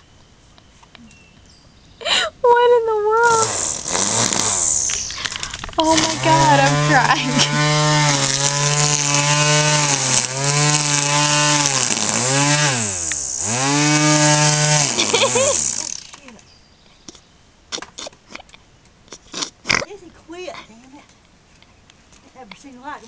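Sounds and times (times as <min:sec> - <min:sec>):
string trimmer engine revving: 0:03.2 - 0:16.4.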